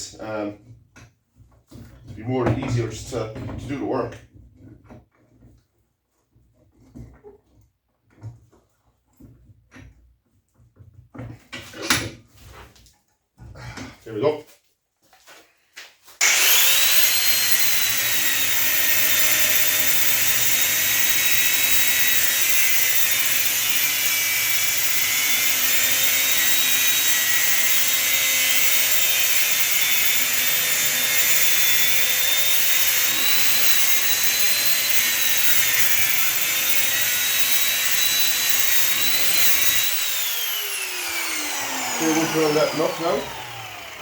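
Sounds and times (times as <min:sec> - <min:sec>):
power tool cutting metal: 0:16.2 - 0:44.0.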